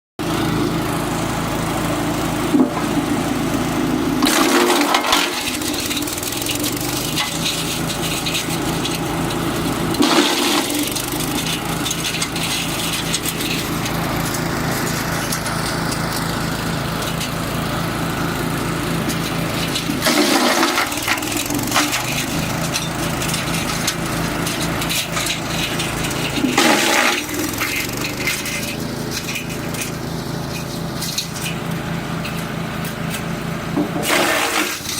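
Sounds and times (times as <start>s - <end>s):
petrol engine running: 0.2s - 34.9s
wood chipper crunching wood: 0.2s - 34.9s.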